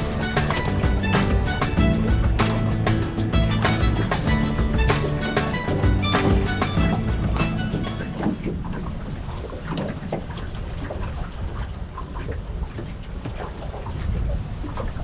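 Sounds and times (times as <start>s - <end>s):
background music: 0.0s - 8.4s.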